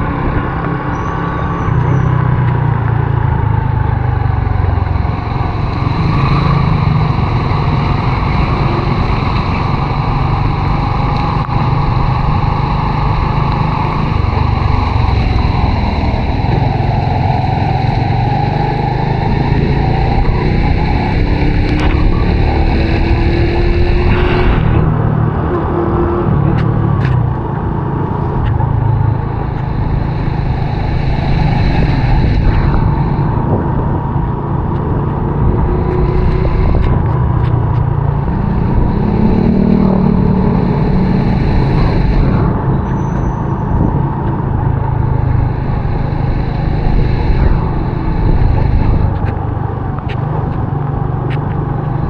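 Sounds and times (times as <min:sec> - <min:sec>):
wind buffeting microphone: 0:00.0 - 0:52.0.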